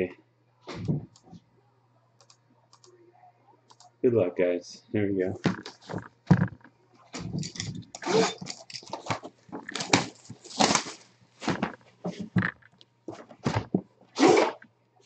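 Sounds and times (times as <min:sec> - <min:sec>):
packing tape ripping: 0:07.4 - 0:11.1.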